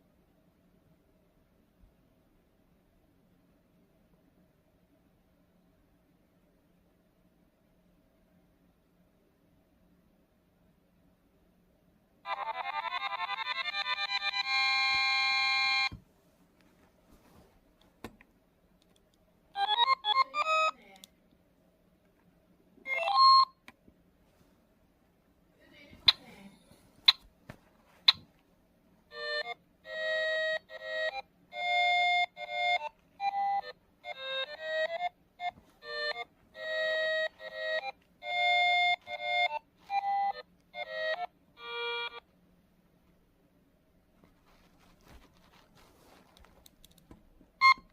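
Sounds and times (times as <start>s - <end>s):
alarm clock beeping melody: 12.3s - 15.9s, 22.9s - 23.6s, 29.1s - 42.2s.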